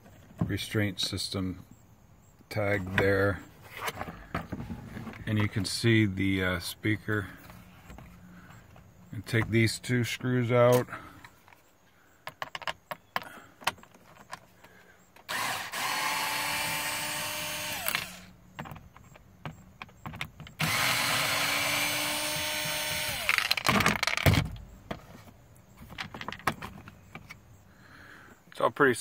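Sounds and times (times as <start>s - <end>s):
small clicks and knocks: 12.2s - 15.3s, 18.5s - 20.6s
power drill backing out screws: 14.7s - 18.3s, 20.5s - 24.4s.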